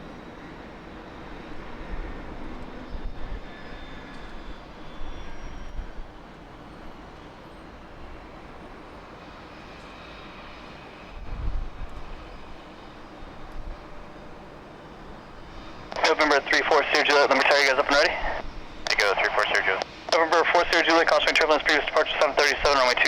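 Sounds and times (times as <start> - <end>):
jet engines at takeoff power: 0.0 - 23.0.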